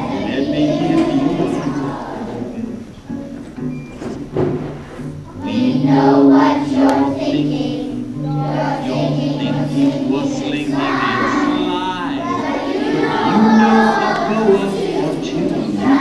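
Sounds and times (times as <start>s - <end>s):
children's choir singing: 0.0s - 3.2s, 5.3s - 16.0s
musical accompaniment: 0.0s - 16.0s.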